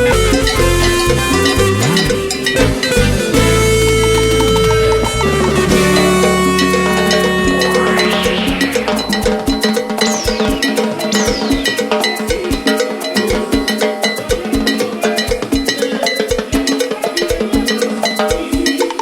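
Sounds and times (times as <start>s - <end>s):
hand percussion strikes: 0.0s - 19.0s
percussion-led cumbia backing track: 0.0s - 19.0s
falling sweeps: 4.4s - 13.3s.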